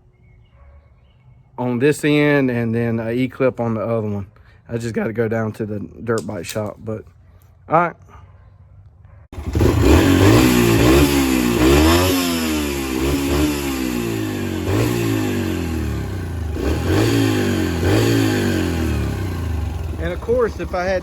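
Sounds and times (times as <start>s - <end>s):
dirt bike engine revving: 9.3s - 21.0s.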